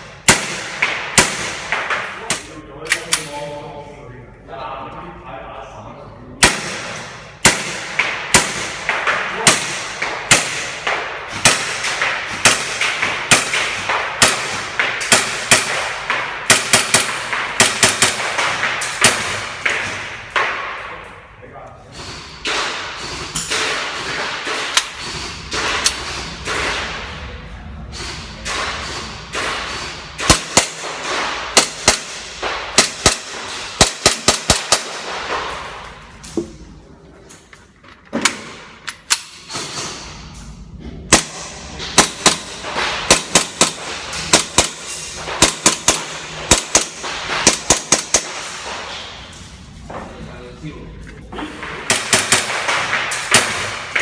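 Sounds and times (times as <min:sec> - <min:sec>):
airsoft pistol shots: 0:00.2 - 0:02.5, 0:06.4 - 0:20.7, 0:28.4 - 0:35.6, 0:41.1 - 0:49.0, 0:51.8 - 0:54.0.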